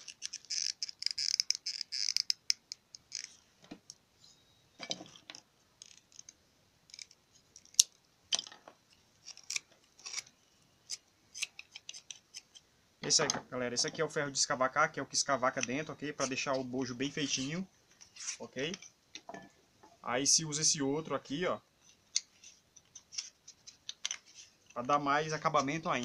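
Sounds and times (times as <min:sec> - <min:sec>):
tools scraping: 0:09.2 - 0:14.1, 0:15.5 - 0:20.0, 0:21.8 - 0:26.0.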